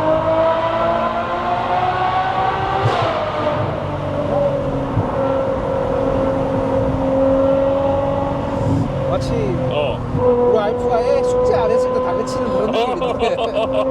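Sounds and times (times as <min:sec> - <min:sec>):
car engine running: 0:03.6 - 0:13.9.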